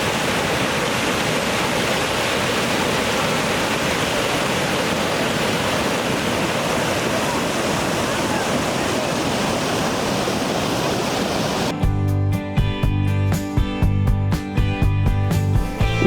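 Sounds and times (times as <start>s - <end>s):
waterfall rushing: 0.0s - 11.7s
background music: 11.7s - 16.0s.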